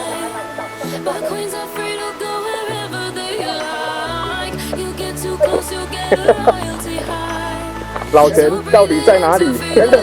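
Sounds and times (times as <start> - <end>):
pop music with singing: 0.0 - 10.0
bass line: 4.1 - 10.0.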